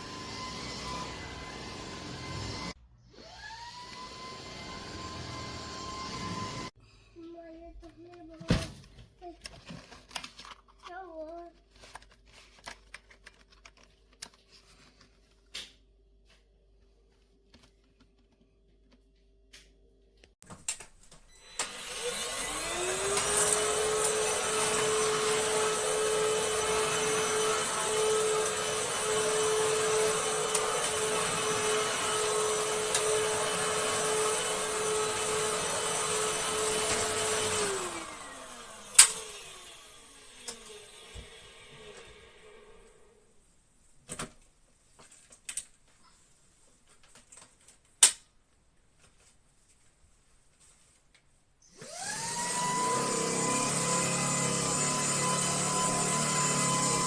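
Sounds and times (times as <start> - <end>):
stick vacuum motor whining: 0.0 - 6.8, 21.3 - 43.1, 51.6 - 57.0.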